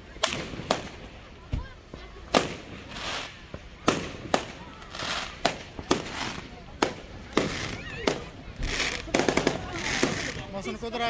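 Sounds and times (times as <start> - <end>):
fireworks bangs: 0.0 - 10.7
fireworks hiss: 0.0 - 11.0.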